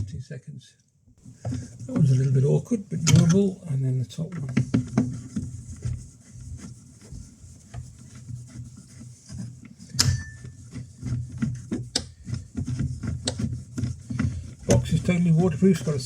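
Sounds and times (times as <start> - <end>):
plastic parts clicking and knocking: 9.9 - 15.0.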